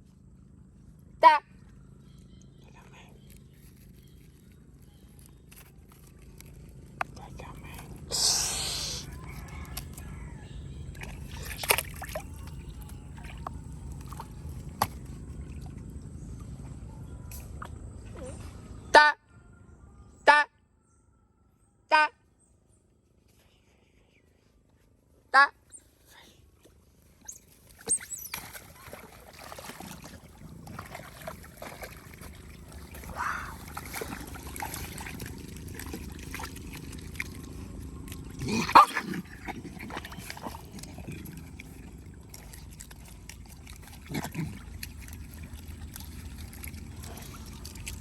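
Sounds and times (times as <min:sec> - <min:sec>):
water sloshing and gurgling: 0:01.8 - 0:18.9, 0:26.4 - 0:48.0
sharp splashes: 0:10.9 - 0:15.8, 0:27.6 - 0:48.0.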